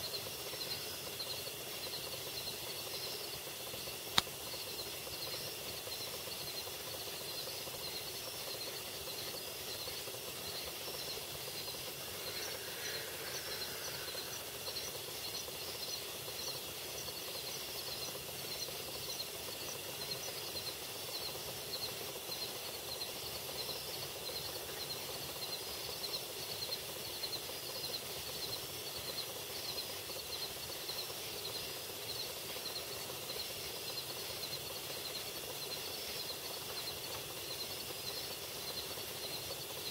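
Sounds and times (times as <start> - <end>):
camera hiss: 0.0 - 39.9
animal chirping: 6.5 - 19.3.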